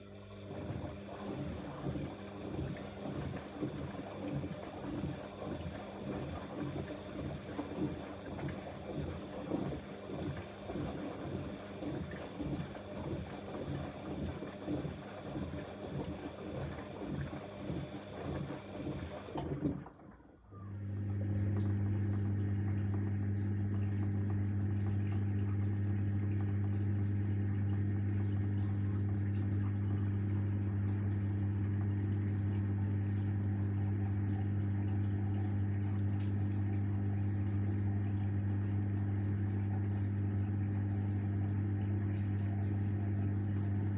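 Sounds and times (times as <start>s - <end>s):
washing machine drum sloshing: 0.0s - 29.6s
drain pump humming: 0.0s - 43.9s.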